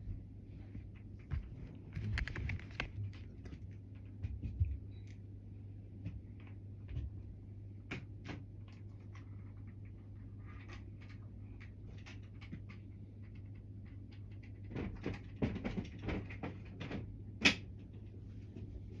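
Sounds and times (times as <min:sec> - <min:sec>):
steady low hum: 0:00.0 - 0:19.0
small clicks and rustles: 0:00.6 - 0:05.3, 0:07.9 - 0:17.1.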